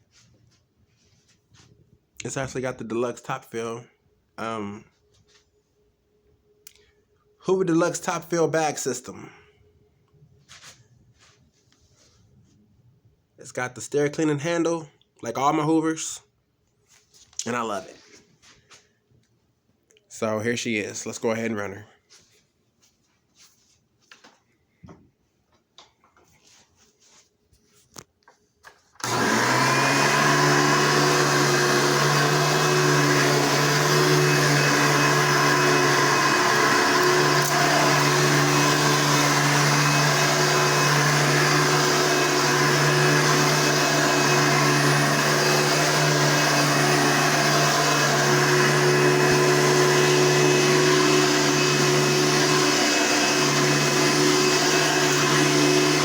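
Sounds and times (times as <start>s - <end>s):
vacuum cleaner running: 28.9s - 56.0s.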